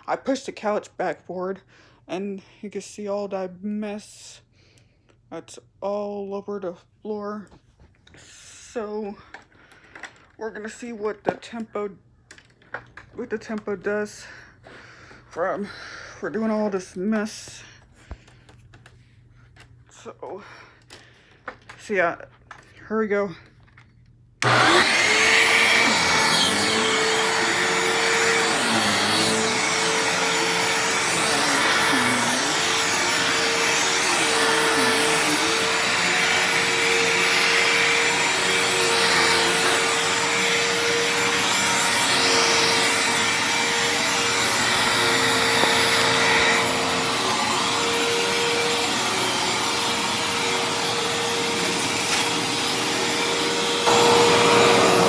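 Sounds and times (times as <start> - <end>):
vacuum cleaner whining: 24.4 - 55.0.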